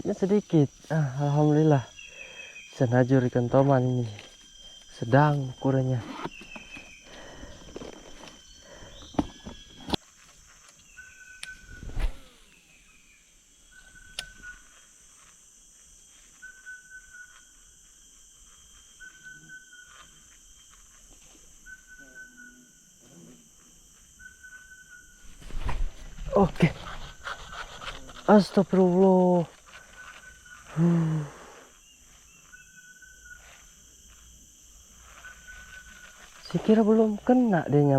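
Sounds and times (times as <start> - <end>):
steady high hiss: 7.8 - 37.9.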